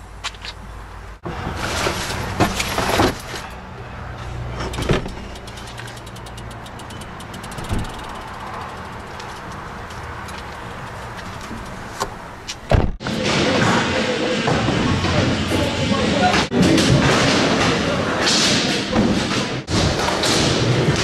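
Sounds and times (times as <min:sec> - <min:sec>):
road noise: 0:00.0 - 0:16.8
car engine hum: 0:00.6 - 0:13.0.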